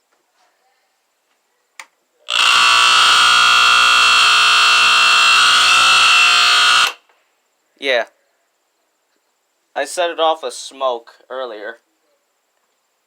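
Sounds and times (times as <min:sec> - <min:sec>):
smoke alarm continuous tone: 0:02.3 - 0:07.0.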